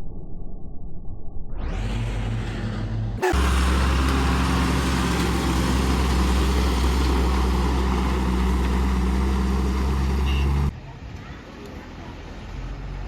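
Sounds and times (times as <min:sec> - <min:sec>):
heavy diesel engine droning: 0:01.8 - 0:10.7.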